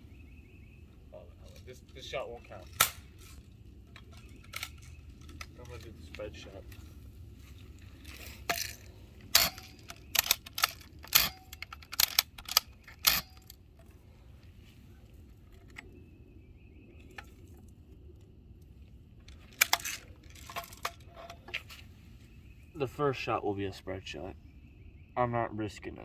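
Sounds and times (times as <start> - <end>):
bb gun mechanical clicks: 8.5 - 13.6.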